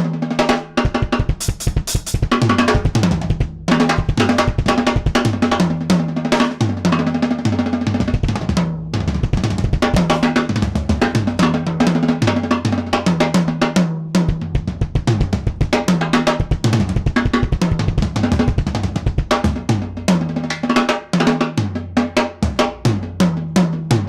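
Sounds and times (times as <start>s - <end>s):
tom drum fills: 0.0s - 21.8s, 22.4s - 24.0s
snare and bass drum strokes: 0.0s - 24.0s.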